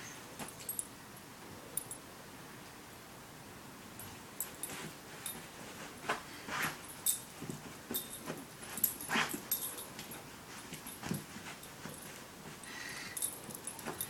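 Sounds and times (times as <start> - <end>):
dog scratching at blanket: 8.6 - 9.6.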